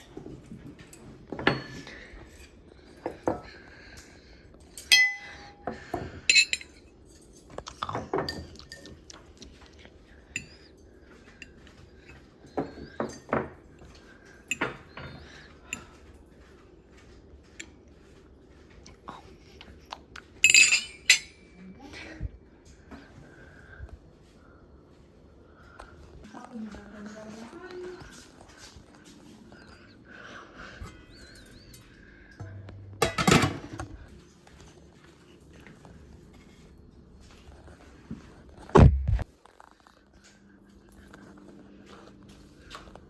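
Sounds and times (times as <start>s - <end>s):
cutlery and dishes clinking: 0.0s - 16.6s, 20.3s - 21.5s, 30.6s - 33.9s.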